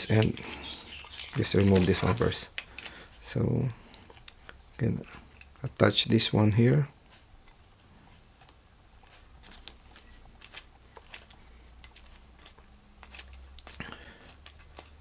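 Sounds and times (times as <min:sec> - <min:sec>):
metal parts clicking and tapping: 0:00.0 - 0:03.0, 0:08.4 - 0:15.0.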